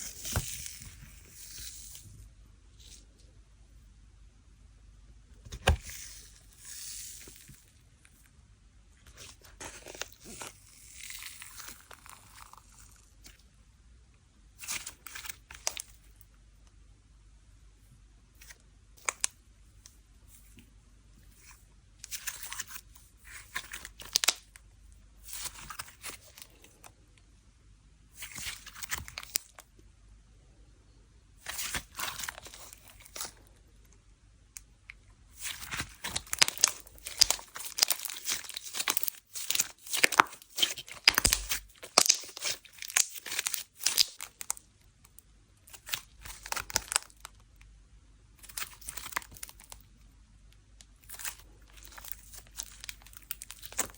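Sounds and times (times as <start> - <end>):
packaging crinkling and tearing: 9.2 - 13.4, 14.6 - 16.0, 21.4 - 24.6, 28.2 - 29.6, 31.4 - 33.5, 35.3 - 45.1, 45.7 - 47.4, 48.4 - 49.9, 51.0 - 53.9.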